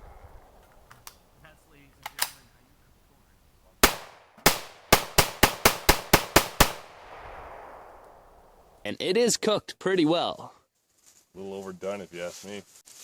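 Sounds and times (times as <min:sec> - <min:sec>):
gunshot echo: 0:03.8 - 0:08.8
rifle shots: 0:03.8 - 0:08.8.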